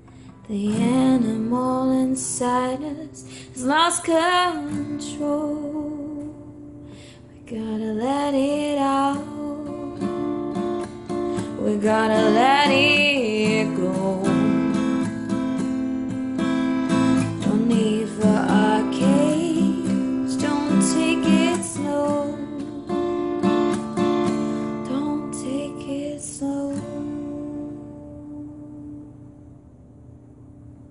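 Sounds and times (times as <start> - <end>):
acoustic guitar strumming chords: 8.4 - 28.6.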